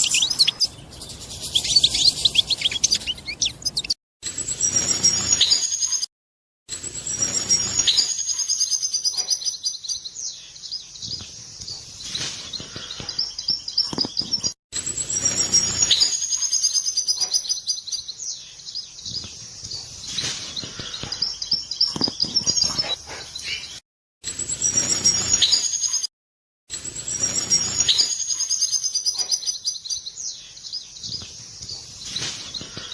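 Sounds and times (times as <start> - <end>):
goldfinch twittering and trilling: 0.0 - 4.0, 7.1 - 9.2, 27.1 - 29.2.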